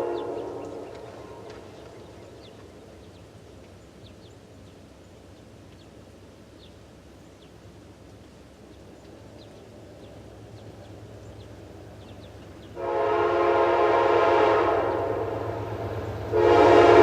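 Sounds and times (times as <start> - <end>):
train horn: 0.0 - 1.9, 12.8 - 17.0
small birds chirping: 0.0 - 12.8
low background hum: 0.0 - 17.0
train rumble: 0.0 - 17.0.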